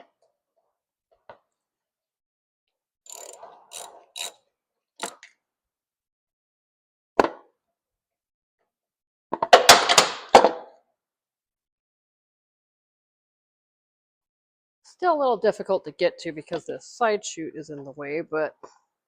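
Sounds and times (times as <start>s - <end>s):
tools clicking and rattling: 3.1s - 4.4s, 5.0s - 5.3s.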